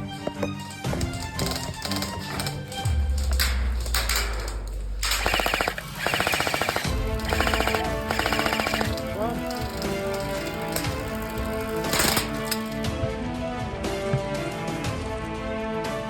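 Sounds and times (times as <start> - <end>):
airsoft gun firing bursts: 1.1 - 12.8.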